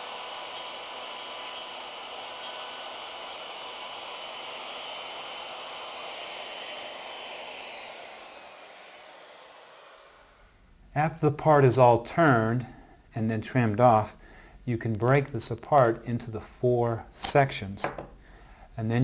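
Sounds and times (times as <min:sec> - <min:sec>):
router high whine: 0:00.0 - 0:10.5.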